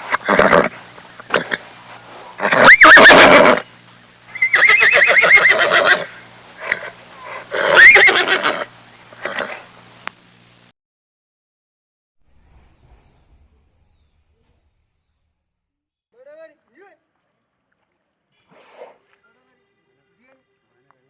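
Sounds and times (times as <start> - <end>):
horse neighing: 0.0 - 3.6, 4.3 - 9.7
horse snorting: 0.0 - 3.6, 4.5 - 9.7, 18.5 - 19.1.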